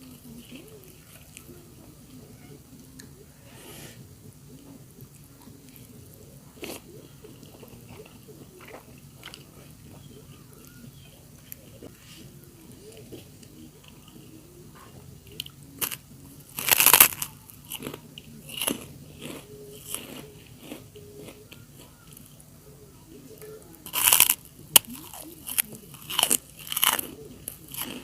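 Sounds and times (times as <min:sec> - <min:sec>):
person crunching food: 0:06.6 - 0:11.9, 0:15.3 - 0:22.5, 0:23.8 - 0:28.0.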